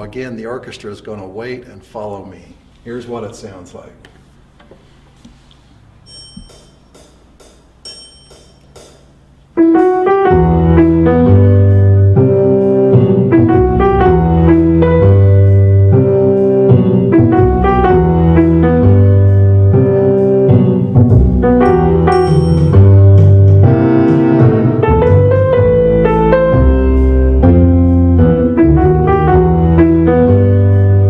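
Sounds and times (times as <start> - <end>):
piano piece: 9.5 - 31.0.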